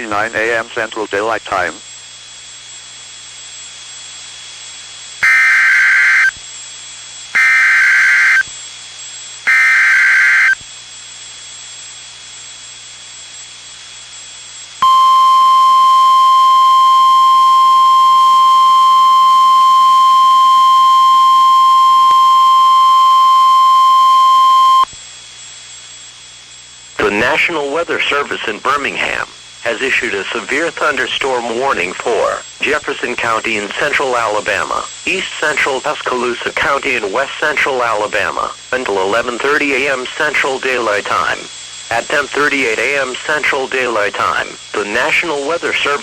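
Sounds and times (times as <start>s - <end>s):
shrill digital data bursts: 5.2s - 6.3s, 7.4s - 8.4s, 9.5s - 10.6s, 14.8s - 24.9s
steady warning alarm tone: 5.2s - 6.4s, 7.4s - 8.5s, 9.5s - 10.6s, 14.8s - 24.9s
radio hiss: 9.5s - 10.6s, 15.7s - 24.8s, 27.0s - 46.0s.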